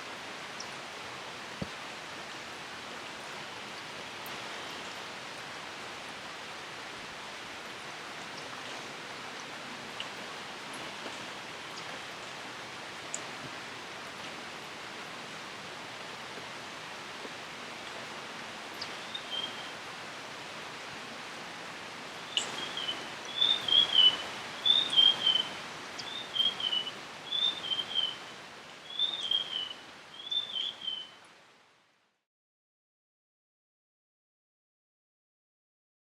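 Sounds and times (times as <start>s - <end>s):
rain hissing: 21.4s - 30.9s.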